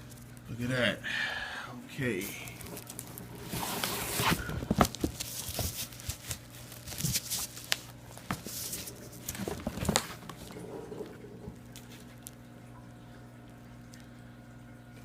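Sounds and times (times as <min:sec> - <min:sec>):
packaging rustling and crinkling: 0:02.2 - 0:12.4.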